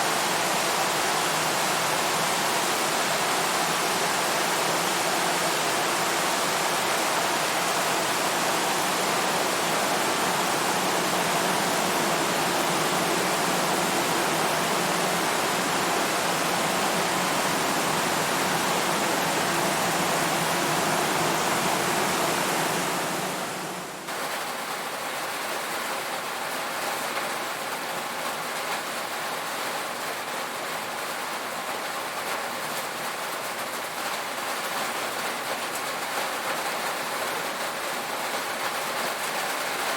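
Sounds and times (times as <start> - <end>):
heavy rain on a tin roof: 0.0 - 39.9.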